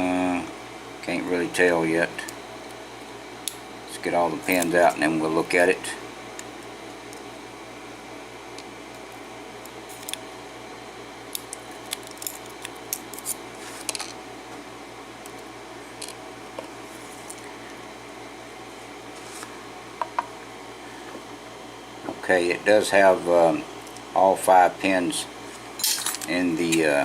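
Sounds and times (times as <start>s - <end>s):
steady background hum: 0.0s - 27.0s.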